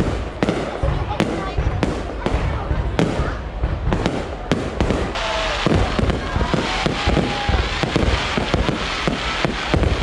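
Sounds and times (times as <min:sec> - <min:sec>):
fireworks bangs: 0:00.0 - 0:10.0
fireworks crackling hiss: 0:00.0 - 0:10.0.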